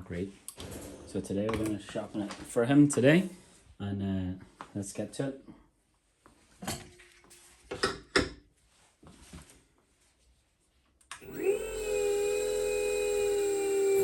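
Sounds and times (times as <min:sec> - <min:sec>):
sharpening machine motor humming: 0:11.2 - 0:14.0.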